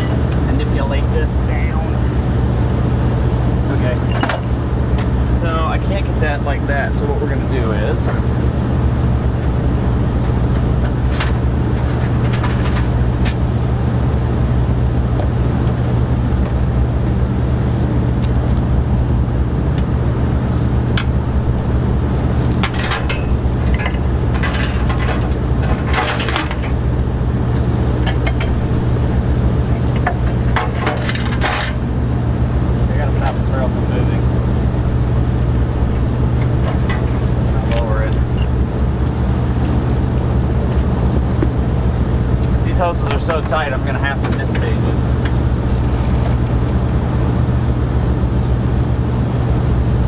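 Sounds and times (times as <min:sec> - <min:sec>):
low mechanical hum: 0:00.0 - 0:50.0
metallic clinks and knocks: 0:20.3 - 0:21.1, 0:22.4 - 0:27.2.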